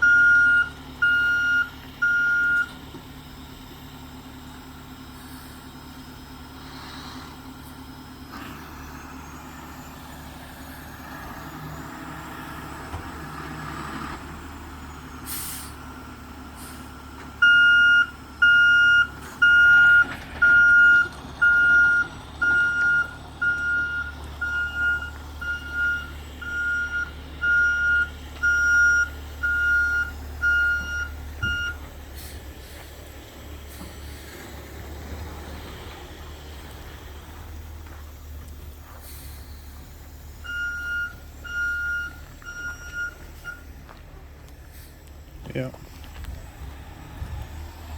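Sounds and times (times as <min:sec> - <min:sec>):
reverse alarm beeping: 0:00.0 - 0:02.8, 0:17.4 - 0:31.8, 0:40.4 - 0:43.7
diesel engine running: 0:00.0 - 0:47.9
brief hiss: 0:15.2 - 0:15.8.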